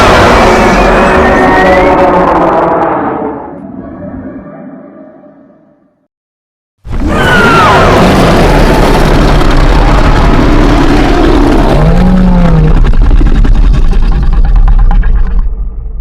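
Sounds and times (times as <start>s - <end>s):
deep monster roar: 0.0s - 5.9s, 6.9s - 15.0s
gliding cries: 0.3s - 6.0s.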